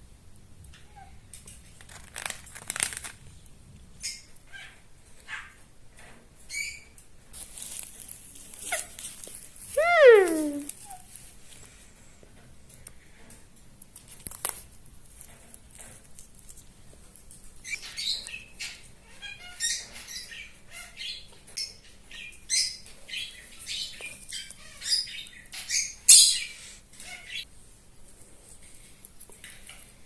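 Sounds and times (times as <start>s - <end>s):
parrot chirping: 9.8s - 10.7s.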